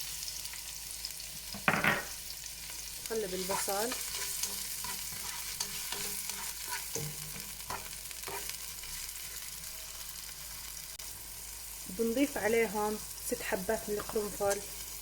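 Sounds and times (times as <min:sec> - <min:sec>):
onions sizzling in oil: 0:00.0 - 0:15.0
spoon scraping a pan: 0:03.3 - 0:10.6.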